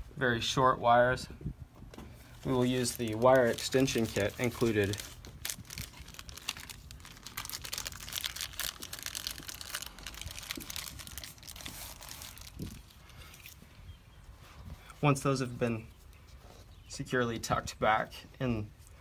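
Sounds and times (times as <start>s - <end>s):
crinkling handling noise: 1.8s - 14.9s.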